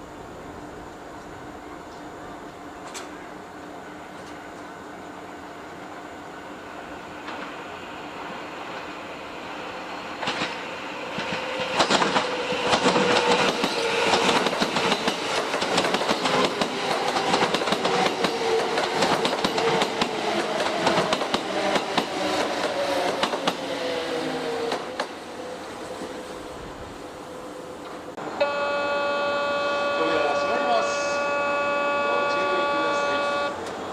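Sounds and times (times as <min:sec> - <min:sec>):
electric train whine: 0:00.0 - 0:33.9
train wheels clattering over rail joints: 0:10.2 - 0:23.6.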